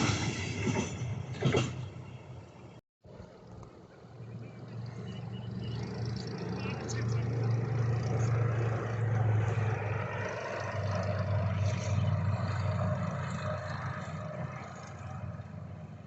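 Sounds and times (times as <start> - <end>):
freight train passing: 0.0 - 16.0.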